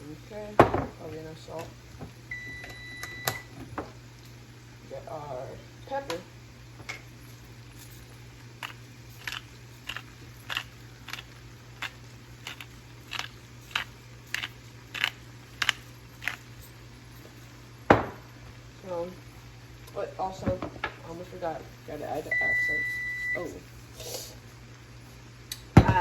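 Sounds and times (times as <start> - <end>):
pepper grinder crunching: 7.3 - 17.6.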